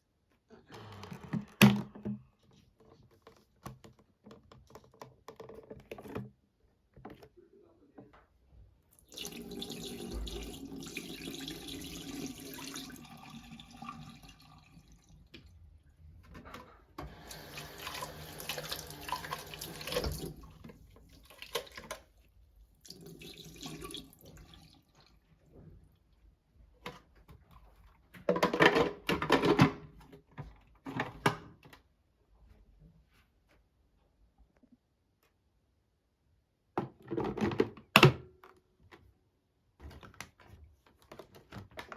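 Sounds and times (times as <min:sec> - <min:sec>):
tap water running into sink: 0:09.0 - 0:15.5, 0:17.0 - 0:22.1, 0:22.8 - 0:25.1.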